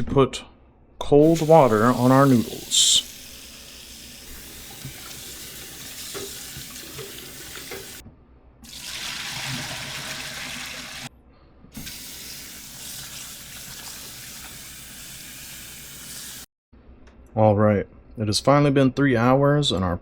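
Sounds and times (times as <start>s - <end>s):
tap water running: 1.2s - 8.0s, 8.6s - 11.1s, 11.8s - 16.5s.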